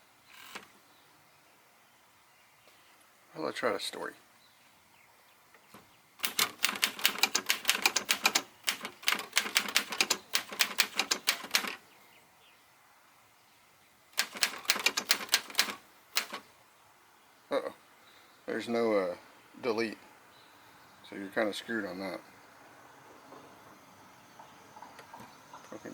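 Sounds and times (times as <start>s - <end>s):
manual typewriter key strikes: 6.2s - 11.8s, 14.2s - 16.4s.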